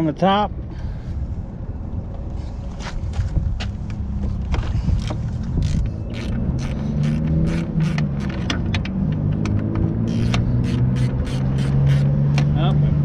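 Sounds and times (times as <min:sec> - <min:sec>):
steady low rumble: 0:00.0 - 0:13.0
socket ratchet clicking: 0:05.0 - 0:08.8, 0:09.4 - 0:12.1.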